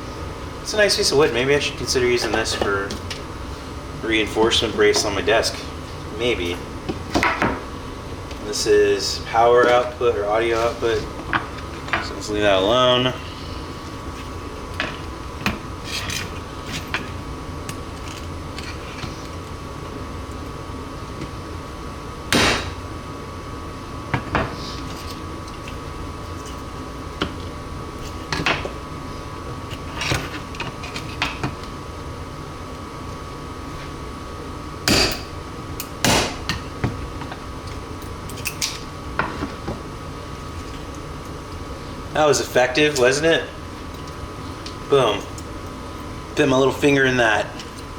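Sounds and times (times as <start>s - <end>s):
hammer striking chisel: 22.4s - 22.8s.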